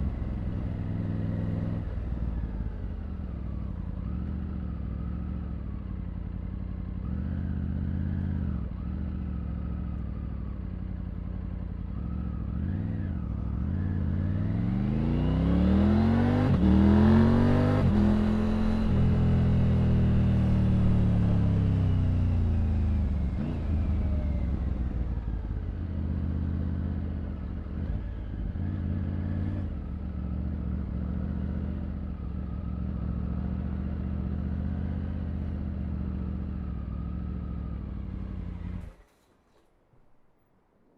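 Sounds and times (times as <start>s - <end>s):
motorcycle engine revving: 11.9s - 39.0s.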